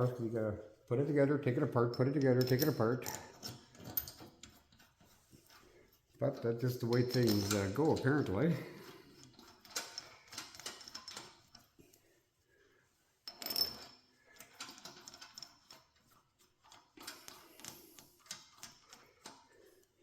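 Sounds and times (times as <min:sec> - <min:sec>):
metallic clicks and clinks: 0:01.8 - 0:05.6, 0:06.3 - 0:11.8, 0:13.2 - 0:19.6.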